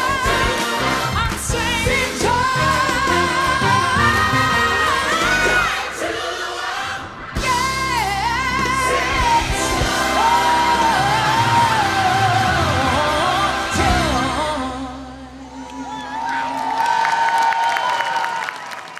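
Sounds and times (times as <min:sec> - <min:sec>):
sustained instrumental backing: 0:00.0 - 0:05.9, 0:07.4 - 0:15.2
solo voice singing: 0:00.0 - 0:16.3.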